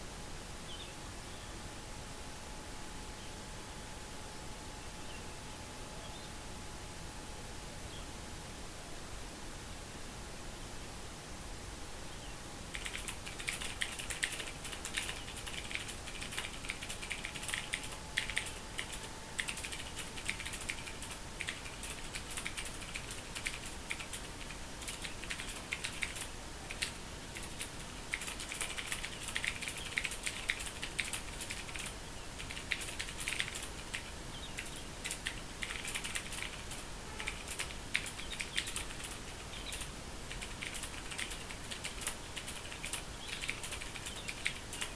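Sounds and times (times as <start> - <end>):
mechanical keyboard typing: 12.7 - 44.9.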